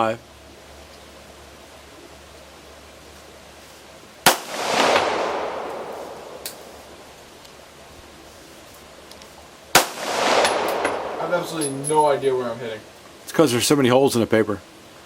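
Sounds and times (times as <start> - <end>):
pistol shots with echo: 4.3 - 7.0, 9.8 - 11.8.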